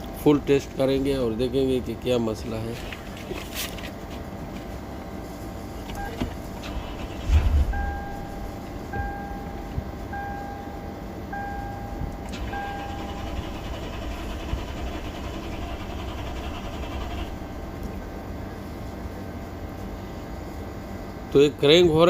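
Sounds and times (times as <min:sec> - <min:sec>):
steady low hum: 0:00.0 - 0:22.0
car warning chime beeping: 0:06.0 - 0:17.7.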